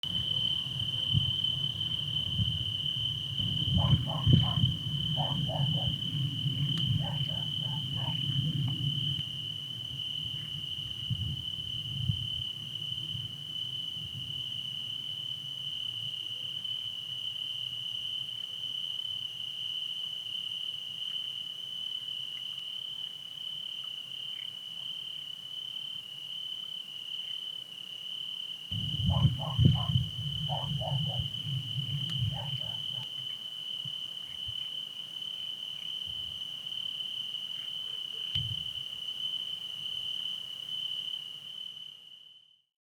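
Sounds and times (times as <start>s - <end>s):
crickets chirping: 0.0s - 42.6s
frogs calling: 3.0s - 8.6s, 28.8s - 33.3s.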